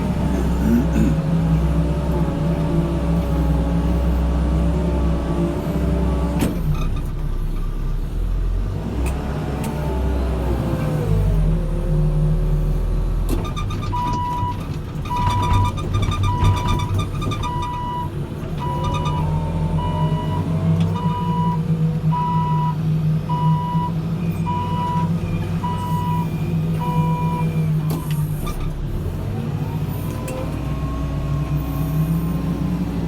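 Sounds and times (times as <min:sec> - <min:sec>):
diesel engine running: 0:00.0 - 0:33.0
reversing alarm beeping: 0:19.8 - 0:27.6.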